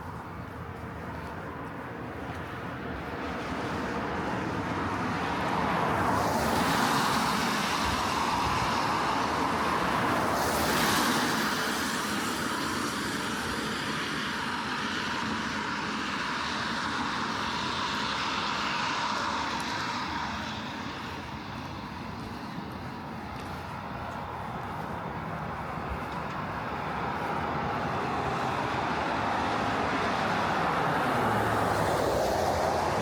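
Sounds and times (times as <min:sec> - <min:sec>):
car tyres hissing on wet street: 0:00.0 - 0:33.0
rain: 0:04.2 - 0:21.5, 0:28.2 - 0:33.0.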